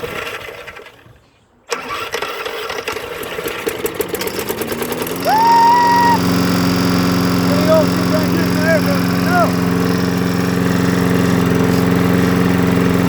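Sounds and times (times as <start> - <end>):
lawnmower engine running: 0.0 - 1.1, 1.7 - 13.0
short rising whoop-like tone: 5.2 - 6.4.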